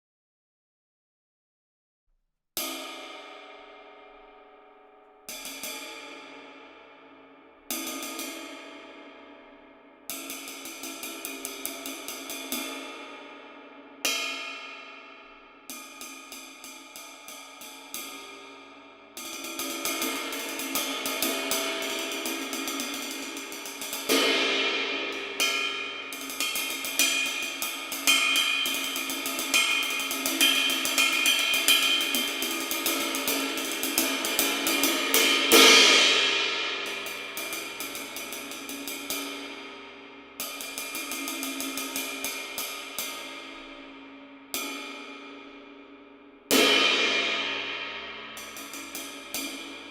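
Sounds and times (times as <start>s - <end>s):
ride cymbal rhythm with stick: 19.2s - 45.8s, 46.5s - 49.9s.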